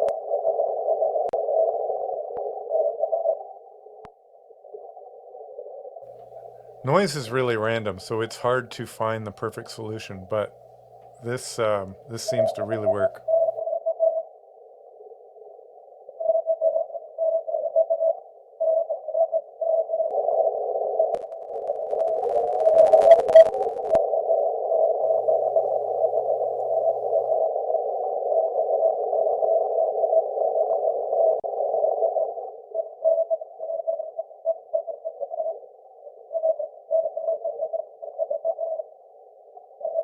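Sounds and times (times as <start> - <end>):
morse code tone: 6.2 - 13.5
radio hiss: 6.2 - 13.6, 25.1 - 27.4.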